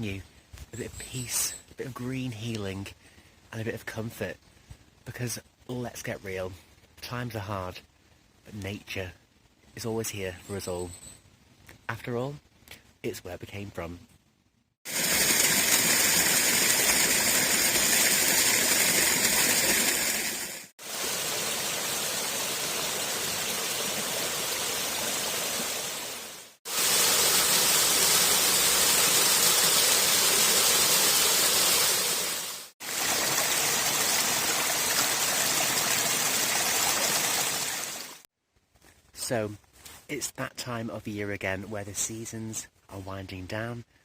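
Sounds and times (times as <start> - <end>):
rushing water hissing: 14.9 - 38.2.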